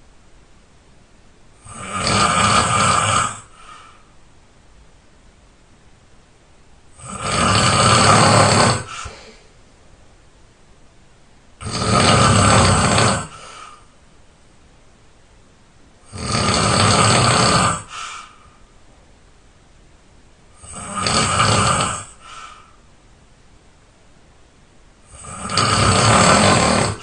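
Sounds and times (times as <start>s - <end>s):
person snoring: 1.6s - 4.1s, 6.9s - 9.5s, 11.6s - 13.9s, 16.0s - 18.5s, 20.6s - 22.8s, 25.1s - 27.0s.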